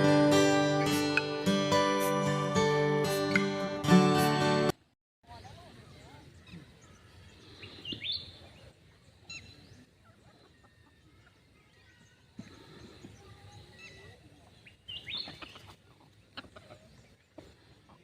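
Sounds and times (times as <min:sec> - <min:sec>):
bird chirps: 0:06.0 - 0:09.9.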